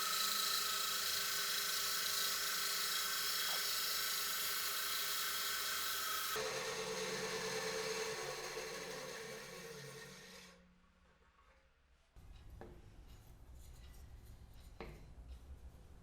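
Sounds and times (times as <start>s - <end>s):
rotary power tool whining on wood: 0.0s - 10.6s.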